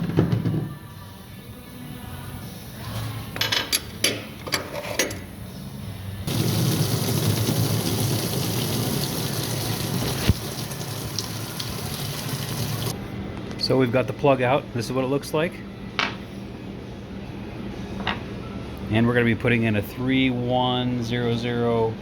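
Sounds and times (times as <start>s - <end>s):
coolant pouring out: 6.3s - 13.0s.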